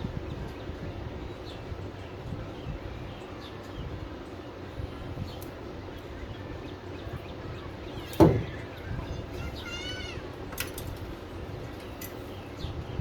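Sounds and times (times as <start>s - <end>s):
steady background noise: 0.0s - 13.0s
loud metallic knock: 8.2s - 8.6s.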